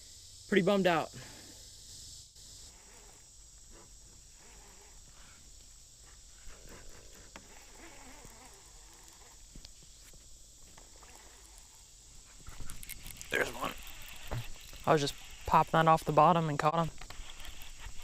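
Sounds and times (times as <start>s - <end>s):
steady high hiss: 0.0s - 18.0s.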